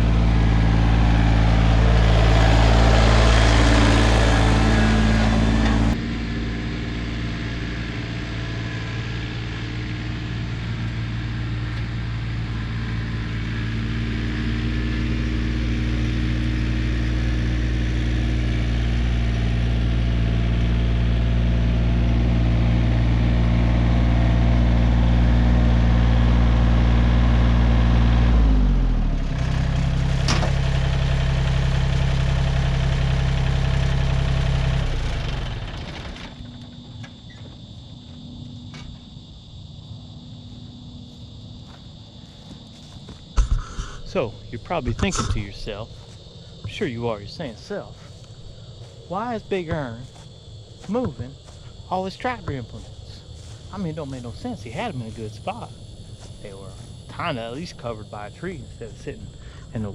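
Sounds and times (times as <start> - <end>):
tractor engine running: 0.0 - 59.9.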